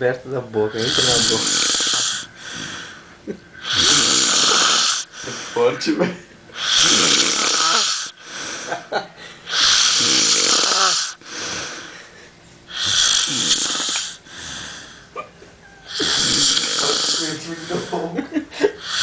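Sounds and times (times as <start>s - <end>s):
man snoring heavily: 0.7s - 5.7s, 6.6s - 8.8s, 9.5s - 12.0s, 12.7s - 15.1s, 15.9s - 18.1s, 18.8s - 19.0s
quiet breathing: 0.8s - 3.9s, 4.9s - 5.7s, 14.0s - 15.2s.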